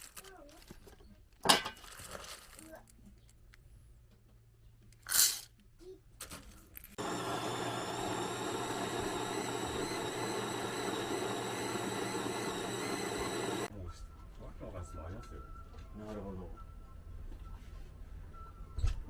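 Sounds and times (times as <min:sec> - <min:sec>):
small electric motor whining: 0:07.0 - 0:13.7.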